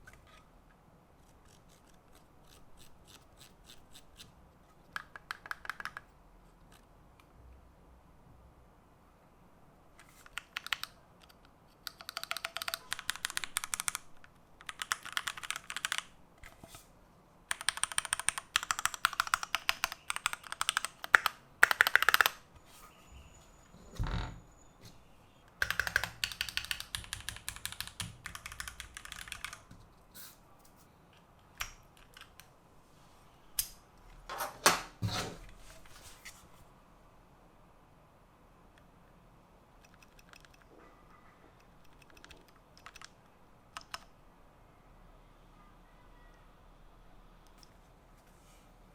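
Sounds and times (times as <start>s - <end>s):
mechanical keyboard key clacks: 10.2s - 14.0s, 14.6s - 16.1s, 17.5s - 22.4s, 25.6s - 29.6s, 41.7s - 44.1s.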